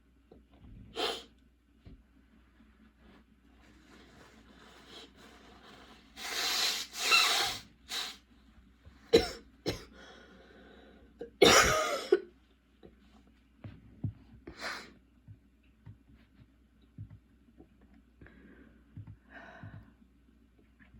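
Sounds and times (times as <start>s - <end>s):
woman coughing: 9.1s - 9.9s, 11.2s - 12.3s.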